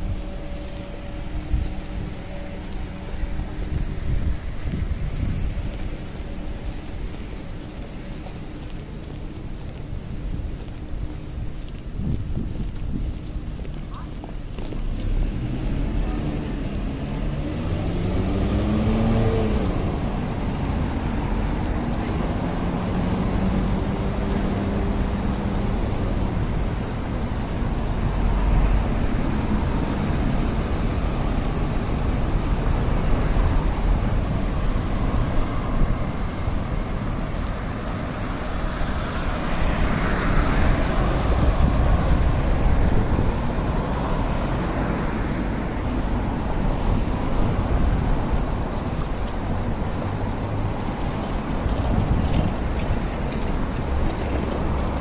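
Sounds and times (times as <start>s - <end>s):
cars passing: 0.0s - 55.0s
vehicle engine pulling away: 14.6s - 55.0s.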